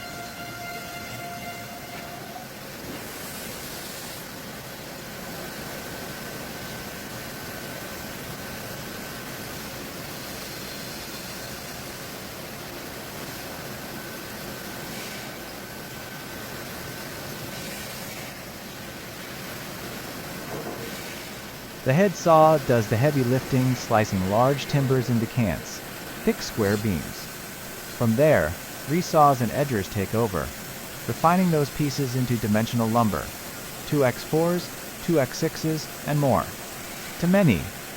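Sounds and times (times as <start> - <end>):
sawmill machinery running: 19.8 - 37.9
faint high whine: 21.8 - 37.9.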